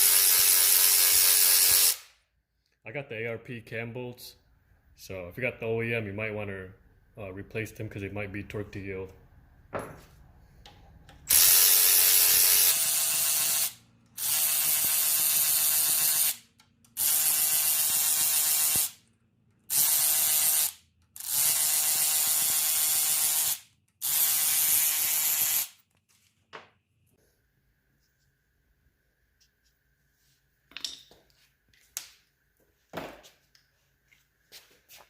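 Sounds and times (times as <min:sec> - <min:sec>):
powered ratchet running: 0:00.0 - 0:02.1, 0:11.3 - 0:19.0, 0:19.7 - 0:25.7.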